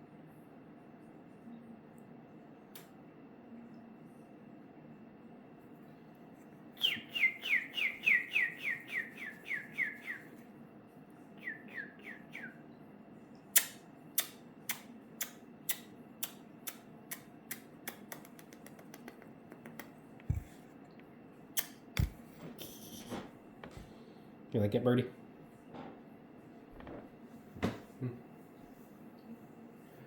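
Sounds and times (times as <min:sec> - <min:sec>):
downward whistled chirps: 0:06.8 - 0:10.3.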